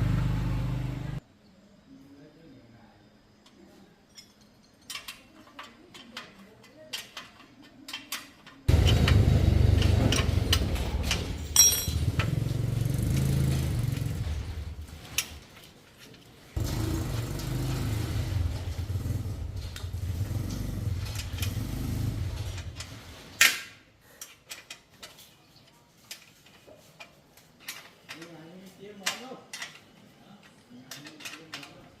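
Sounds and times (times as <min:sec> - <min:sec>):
motor running: 0:00.0 - 0:01.2.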